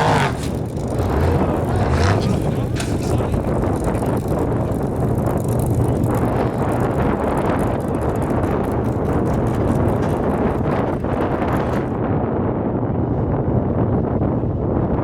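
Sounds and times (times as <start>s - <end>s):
race car engine running: 0.0s - 12.0s
wind buffeting microphone: 0.0s - 15.0s.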